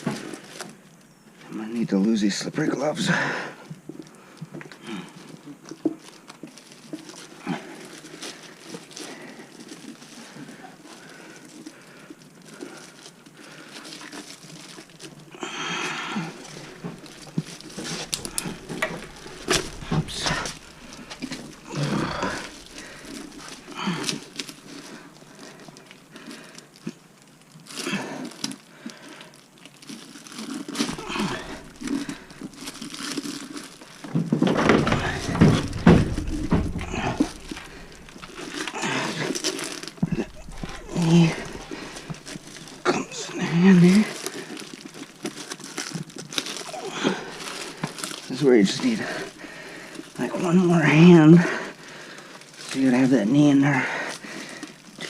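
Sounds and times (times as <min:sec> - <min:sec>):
hands rubbing and rustling: 0:12.4 - 0:26.6, 0:29.8 - 0:53.5
small knocks: 0:16.3 - 0:23.8, 0:34.2 - 0:38.8.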